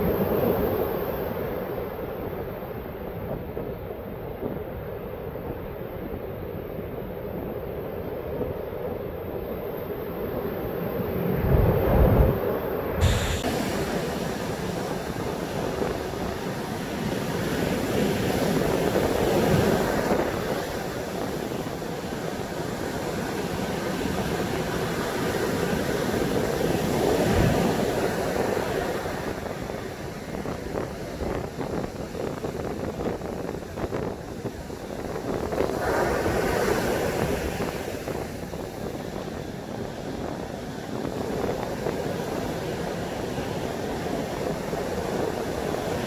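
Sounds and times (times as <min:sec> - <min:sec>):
wind buffeting the microphone: 0:00.0 - 0:46.0
surf breaking on a beach: 0:10.4 - 0:46.0.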